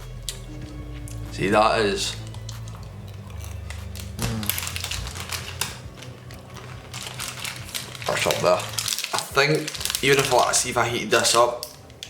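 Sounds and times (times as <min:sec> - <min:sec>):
crunchy chewing: 0:00.0 - 0:10.6
person humming: 0:04.1 - 0:05.2.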